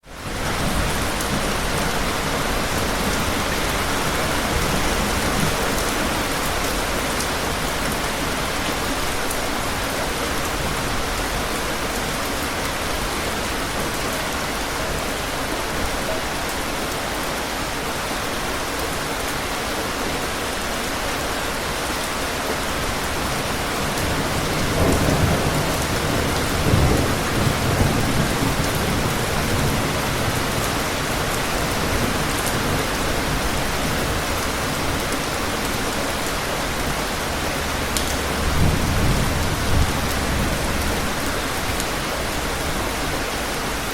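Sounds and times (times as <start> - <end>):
steady rain: 0.0 - 43.9
distant thunder rumble: 36.8 - 41.8.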